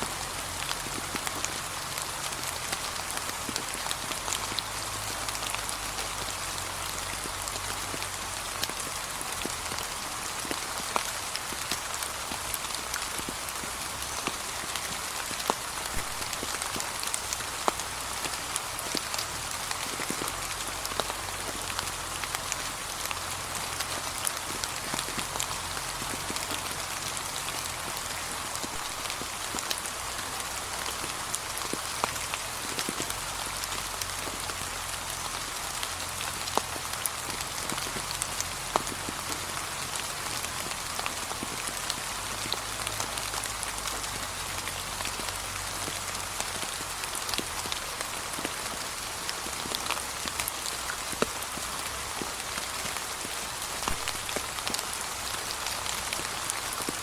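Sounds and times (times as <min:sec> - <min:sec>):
rain on leaves: 0:00.0 - 0:57.0.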